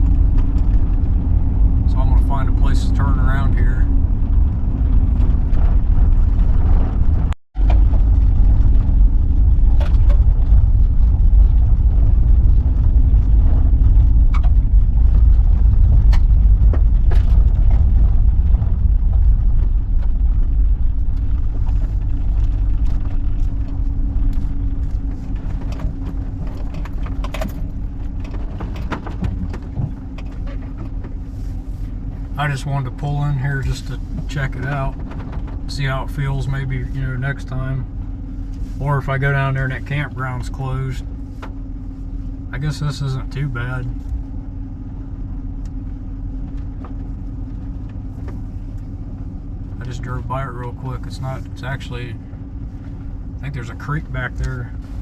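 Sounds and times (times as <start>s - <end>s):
van engine and tyre rumble: 0.0s - 55.0s
small rattles and clicks: 4.8s - 31.2s.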